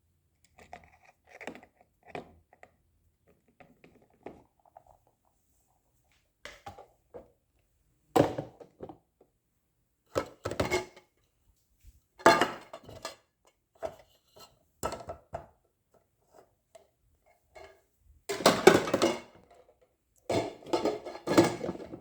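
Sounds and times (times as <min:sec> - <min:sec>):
hard objects clattering: 0:20.3 - 0:22.0.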